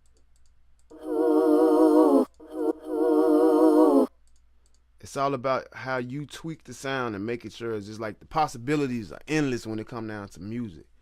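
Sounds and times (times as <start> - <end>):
sampled sung vocal note: 1.0 - 4.1.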